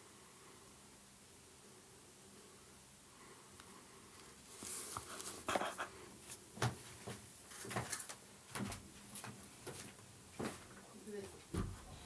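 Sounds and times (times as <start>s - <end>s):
rustle: 3.2s - 5.6s.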